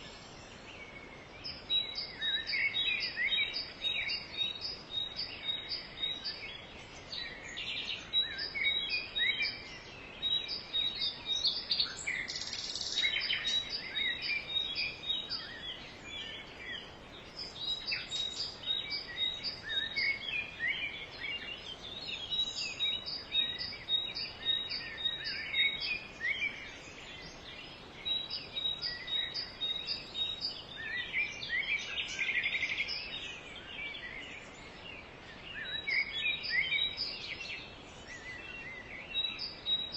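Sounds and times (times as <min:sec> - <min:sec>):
forest birds chirping: 0:00.0 - 0:39.9.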